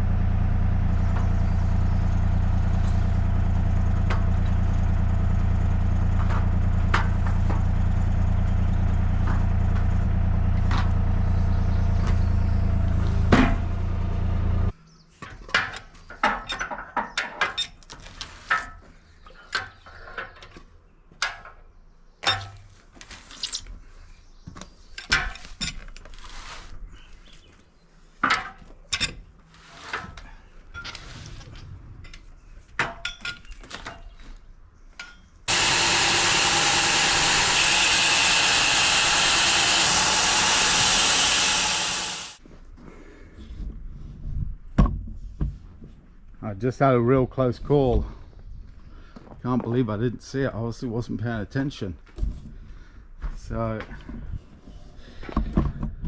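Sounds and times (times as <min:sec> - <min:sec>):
bandsaw mill humming: 0:00.0 - 0:14.7, 0:35.5 - 0:42.4.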